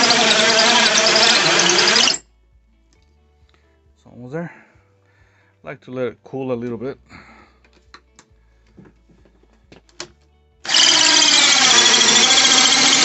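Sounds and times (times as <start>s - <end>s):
power drill with hole saw: 0.0s - 2.2s, 10.6s - 13.0s.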